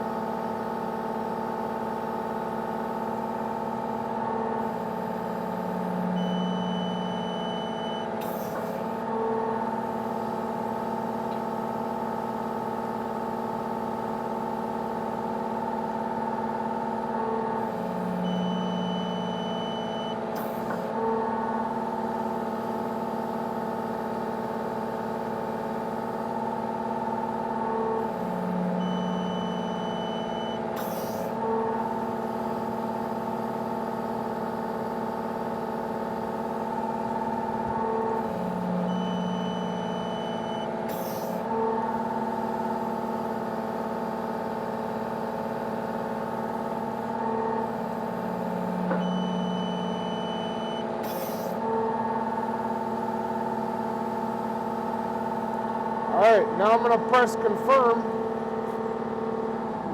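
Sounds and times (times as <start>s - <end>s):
diesel engine running steadily: 0.0s - 59.9s
short beep: 6.1s - 8.1s, 18.3s - 20.2s, 28.8s - 30.6s, 38.9s - 40.7s, 48.9s - 51.4s.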